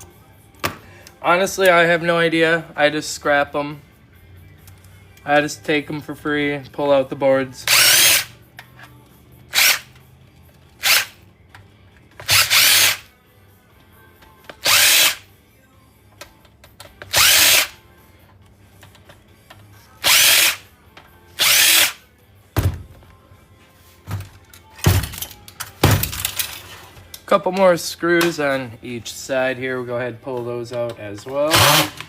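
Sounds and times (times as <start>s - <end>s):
power drill spinning: 7.7s - 8.3s, 9.5s - 10.0s, 10.8s - 11.2s, 12.2s - 13.1s, 14.6s - 15.2s, 17.1s - 17.8s, 20.0s - 20.7s, 21.4s - 22.0s, 31.3s - 32.0s.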